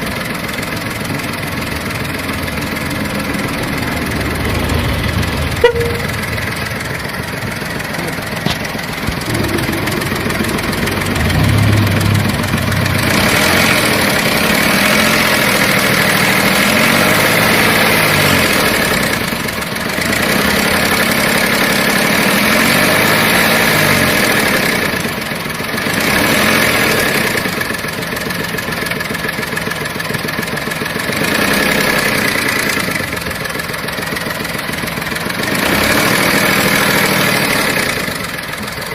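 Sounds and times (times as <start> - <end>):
car engine revving: 1.8 - 25.1, 25.7 - 27.6, 35.2 - 38.4.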